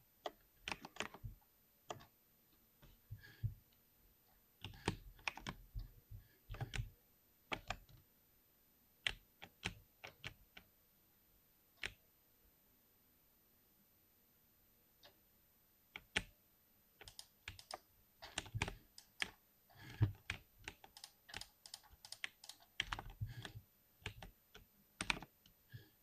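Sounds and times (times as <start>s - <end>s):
keyboard key clicks: 17.0s - 19.3s, 20.1s - 23.5s.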